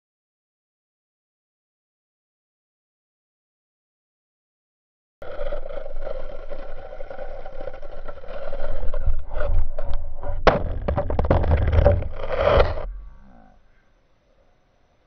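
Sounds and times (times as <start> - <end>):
skate blades scraping over ice: 5.2 - 12.9
low rumble: 8.9 - 13.6.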